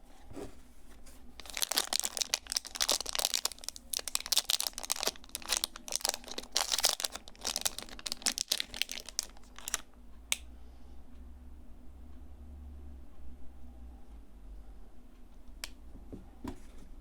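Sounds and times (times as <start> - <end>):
packaging crinkling: 1.4 - 9.9.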